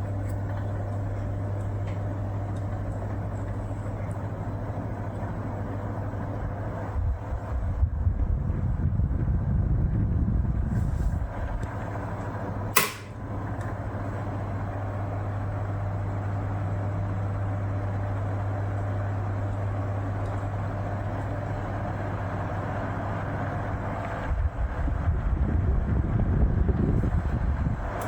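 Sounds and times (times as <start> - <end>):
fan motor hum: 0.0 - 28.0
air rushing from fan blades: 4.8 - 14.2, 21.9 - 28.0
fan switch click: 11.6 - 13.8.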